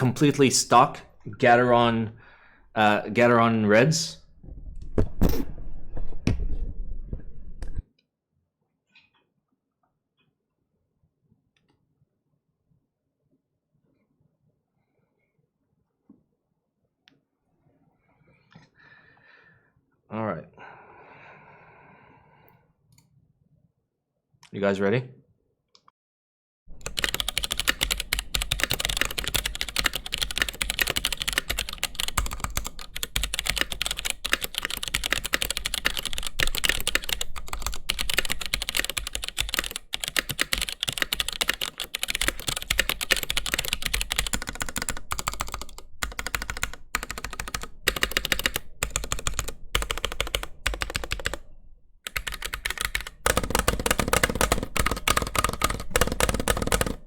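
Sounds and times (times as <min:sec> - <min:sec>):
fast keyboard typing: 0:00.0 - 0:00.8, 0:26.7 - 0:51.5, 0:52.1 - 0:57.0.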